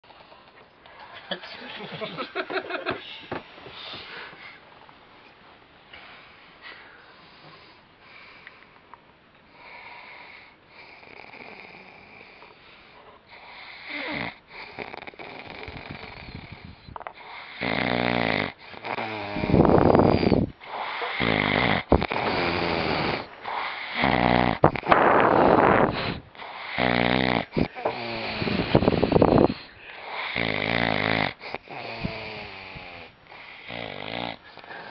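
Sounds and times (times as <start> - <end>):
soft breathing and snuffles: 2.9 - 5.4, 6.0 - 34.9
man snoring loudly: 9.6 - 12.4, 13.4 - 34.9.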